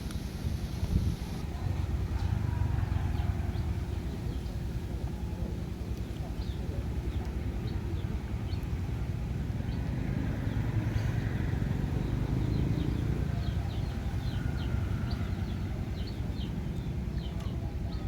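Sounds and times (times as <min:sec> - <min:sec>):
small birds chirping: 0:05.9 - 0:18.0.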